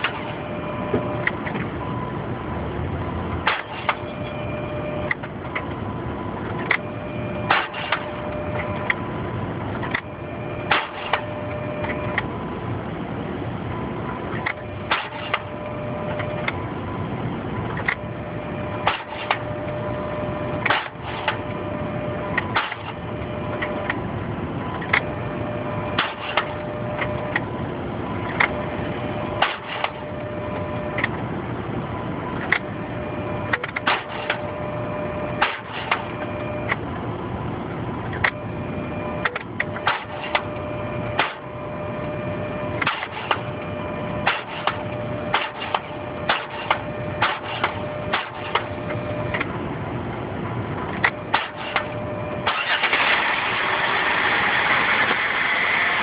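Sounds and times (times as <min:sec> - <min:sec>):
steady tone: 0:00.0 - 0:52.7
engine cranking: 0:52.4 - 0:55.2.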